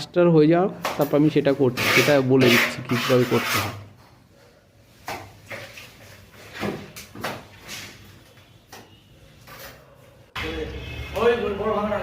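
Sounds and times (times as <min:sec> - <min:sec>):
trowel scraping plaster: 0:01.5 - 0:03.9.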